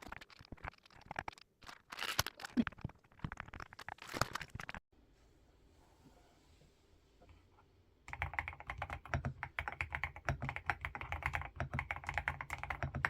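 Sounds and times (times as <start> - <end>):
keyboard parts crinkling and clicking: 0.0 - 4.8.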